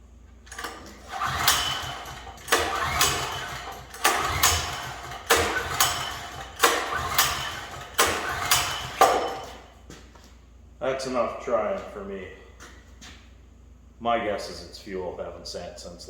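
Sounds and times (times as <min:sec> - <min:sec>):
engine pull-start whirr: 0:00.4 - 0:09.7.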